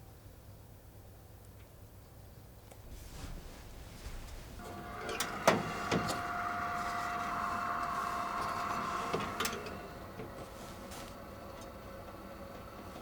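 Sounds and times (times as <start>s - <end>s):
appliance motor whining: 4.6s - 13.0s.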